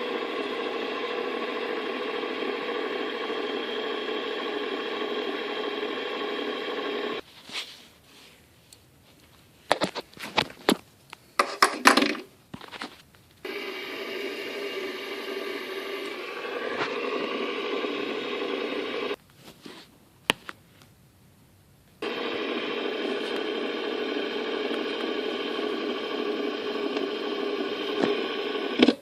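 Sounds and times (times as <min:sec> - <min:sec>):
steady humming drone: 0:00.0 - 0:07.2, 0:13.4 - 0:19.2, 0:22.0 - 0:28.9.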